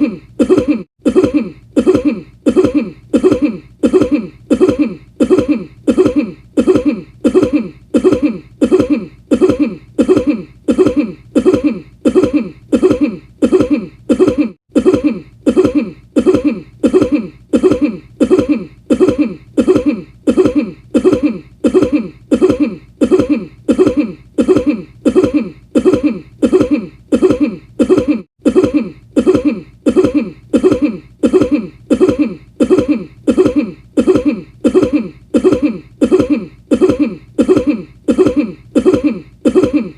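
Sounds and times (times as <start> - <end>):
person coughing: 0.0 - 39.9.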